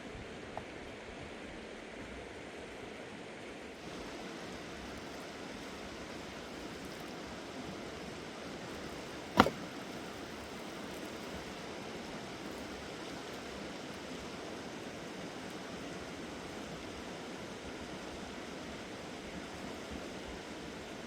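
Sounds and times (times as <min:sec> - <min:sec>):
sharp knock: 0:09.4 - 0:09.6.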